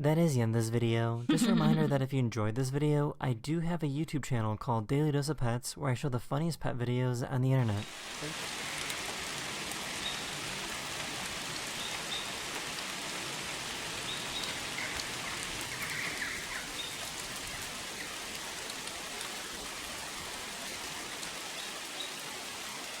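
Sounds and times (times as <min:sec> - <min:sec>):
steady hiss: 0:07.8 - 0:23.0.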